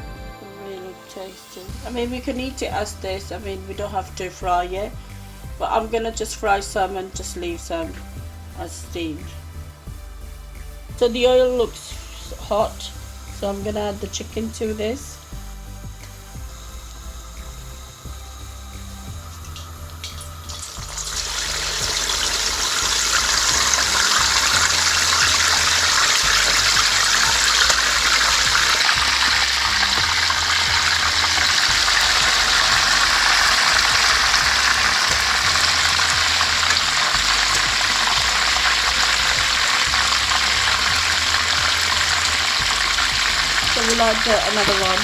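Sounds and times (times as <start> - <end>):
chicken sizzling in frying oil: 11.6 - 45.0.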